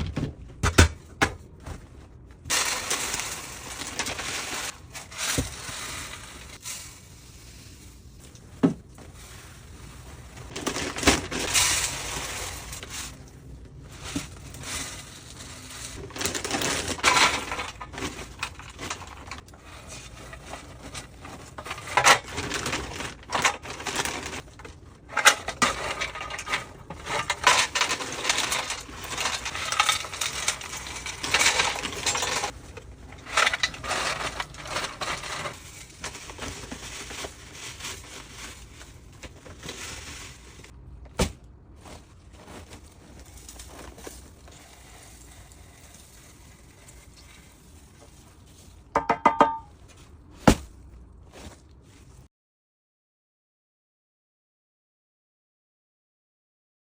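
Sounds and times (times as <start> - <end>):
dried herbs clinking and rustling: 25.2 - 40.8, 41.8 - 50.1.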